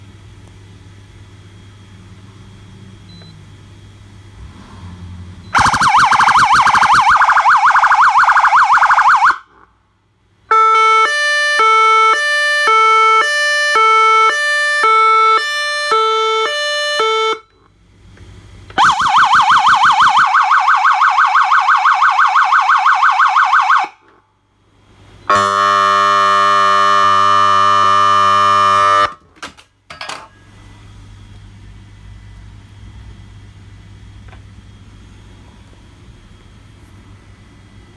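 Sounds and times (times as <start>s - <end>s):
low steady hum: 0.0s - 10.5s
electronic siren: 5.5s - 9.5s, 10.5s - 17.5s, 18.8s - 24.0s, 25.3s - 29.2s
buzzing horn tone: 25.3s - 29.2s.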